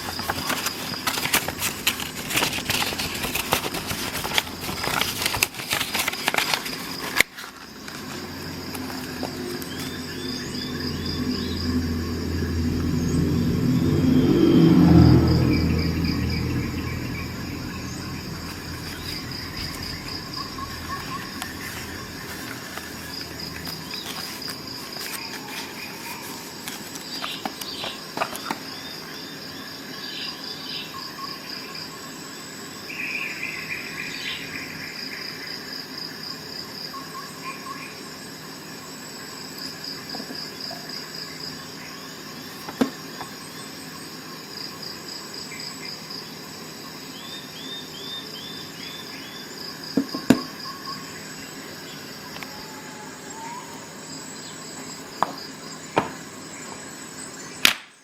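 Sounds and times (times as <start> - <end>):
insects chirping trill: 0.0 - 58.0
low rumble: 8.5 - 24.9
bird calls: 15.5 - 29.3.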